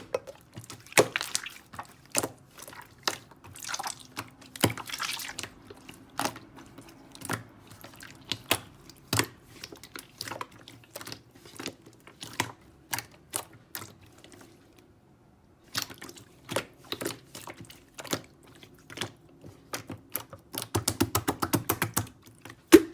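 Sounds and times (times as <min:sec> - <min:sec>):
sharp clicks and taps: 0:20.6 - 0:22.1.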